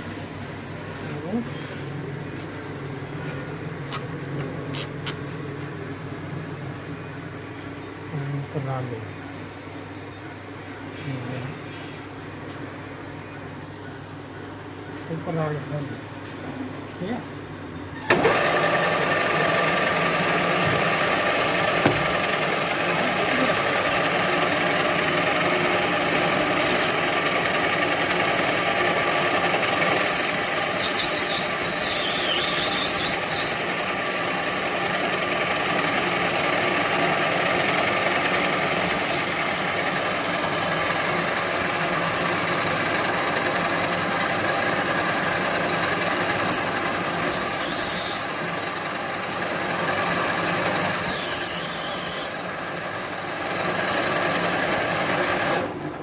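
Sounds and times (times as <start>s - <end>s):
lathe tool rasping on brass: 22.4s - 27.4s, 28.1s - 36.2s, 37.2s - 42.3s, 46.4s - 50.0s, 50.6s - 53.1s
high-pitched squeals: 29.7s - 35.1s, 46.4s - 49.2s.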